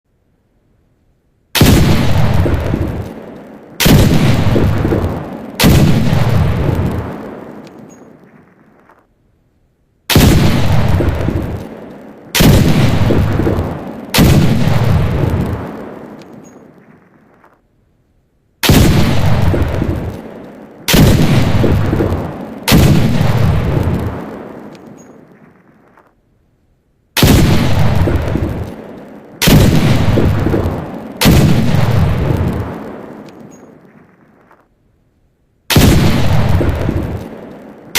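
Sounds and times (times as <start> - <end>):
flintlock pistol shots: 1.6 - 9.0, 10.1 - 17.6, 18.6 - 26.1, 27.2 - 34.6, 35.7 - 37.9.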